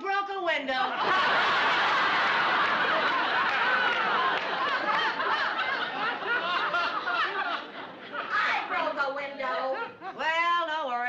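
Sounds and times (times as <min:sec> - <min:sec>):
studio audience laughing: 0:00.9 - 0:10.2.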